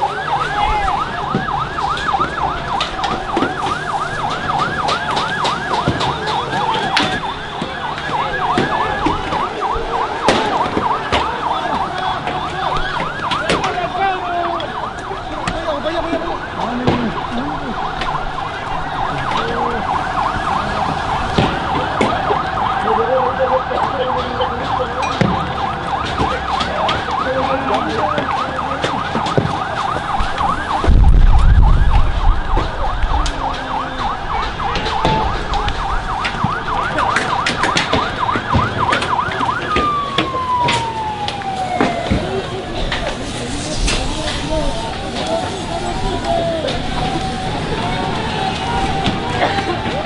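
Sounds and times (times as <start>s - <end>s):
crowd voices: 0.0s - 50.0s
police siren wailing: 0.0s - 50.0s
tone sliding downward: 29.8s - 42.4s
loud low rush of noise: 30.7s - 33.2s.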